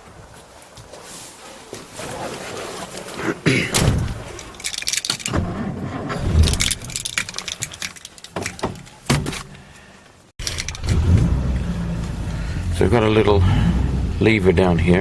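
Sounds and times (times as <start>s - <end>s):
metallic clicks and rattles: 4.1s - 5.5s, 6.2s - 9.6s, 10.4s - 11.2s.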